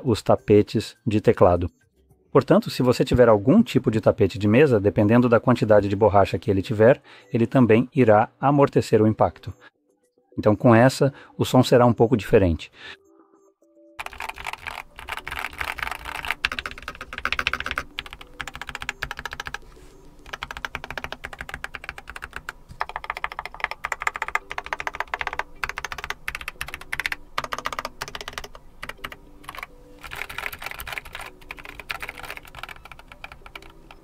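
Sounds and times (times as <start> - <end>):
rapid keyboard typing: 14.0 - 34.0.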